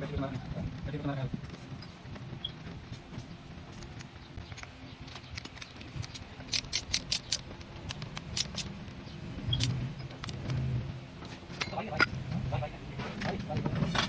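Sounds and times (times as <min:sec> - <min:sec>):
sharp clicks: 0:03.7 - 0:09.0.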